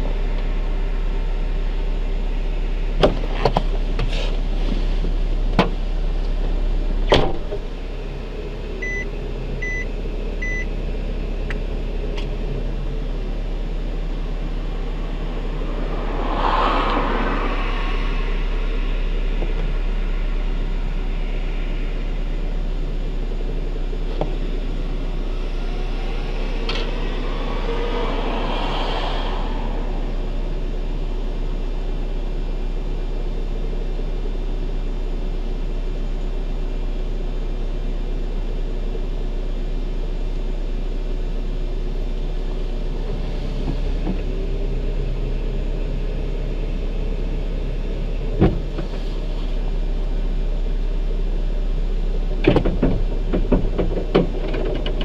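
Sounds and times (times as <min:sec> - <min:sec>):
car engine running: 0:00.0 - 0:55.0
short beeps: 0:08.8 - 0:10.7.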